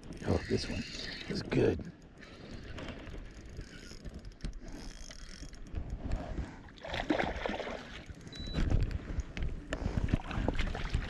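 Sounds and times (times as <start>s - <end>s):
fishing reel ratchet ticking: 3.0s - 5.8s.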